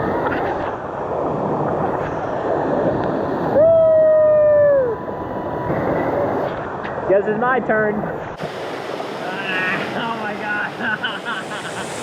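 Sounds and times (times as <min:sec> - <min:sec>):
waterfall rushing: 0:08.4 - 0:12.0.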